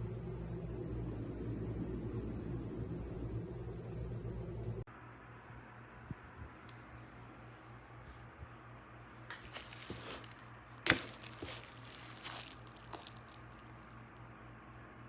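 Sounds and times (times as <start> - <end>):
faint low hum: 0.0 - 15.0
handling noise rustling and clicking: 9.2 - 14.0.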